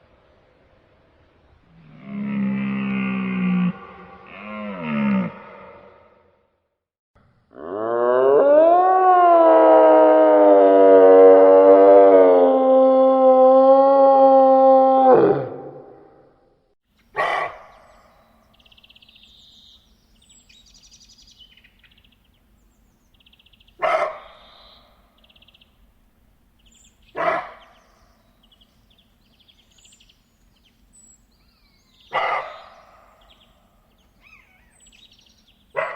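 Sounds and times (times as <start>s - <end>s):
faint bird chirps and trills: 17.0s - 25.9s, 26.6s - 35.9s
deer barking: 17.2s - 17.8s, 23.8s - 24.8s, 27.1s - 27.8s, 32.1s - 33.2s.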